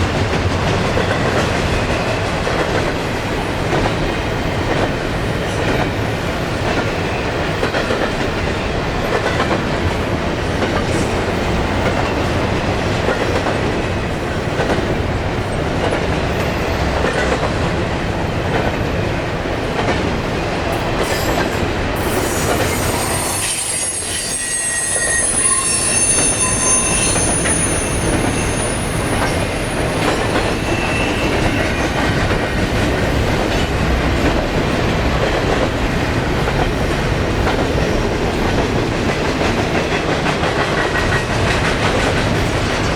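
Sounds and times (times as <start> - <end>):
train cars rumbling and clattering: 0.0 - 42.9
train wheel squeal: 21.0 - 32.6.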